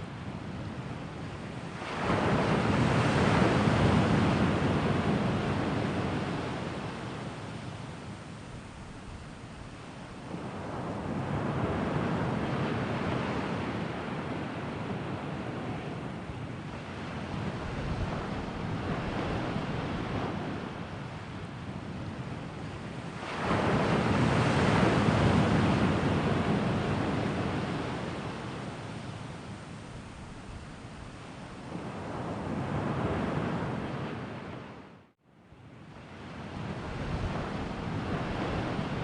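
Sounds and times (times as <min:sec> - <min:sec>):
sea waves breaking: 0:23.0 - 0:34.8, 0:36.0 - 0:39.0.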